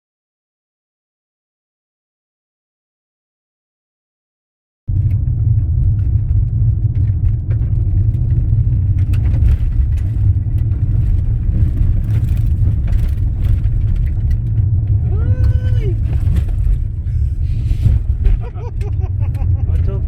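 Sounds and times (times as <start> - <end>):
loud low rumble: 4.9 - 20.0
faint clicks and crackles: 5.8 - 19.5.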